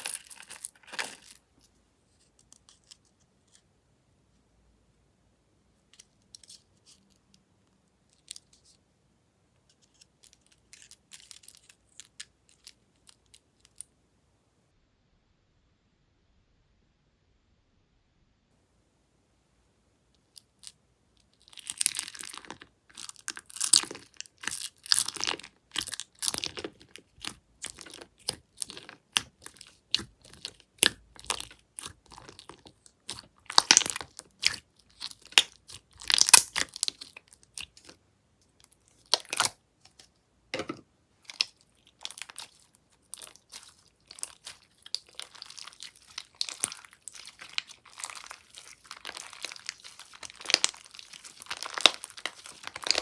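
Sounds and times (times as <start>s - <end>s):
slime crackling and popping: 0.0s - 1.4s, 21.4s - 38.0s, 38.9s - 39.6s, 41.2s - 53.0s.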